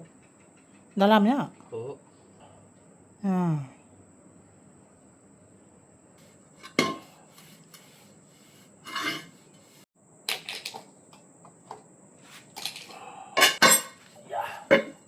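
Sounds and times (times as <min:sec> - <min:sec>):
metal tools clinking and scraping: 0:06.6 - 0:07.2, 0:08.8 - 0:09.4, 0:12.4 - 0:15.0.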